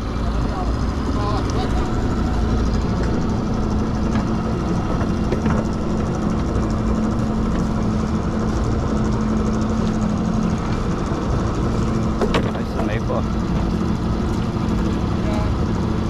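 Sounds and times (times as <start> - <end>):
boat engine humming: 0.0 - 16.0
wash of noise: 0.0 - 16.0.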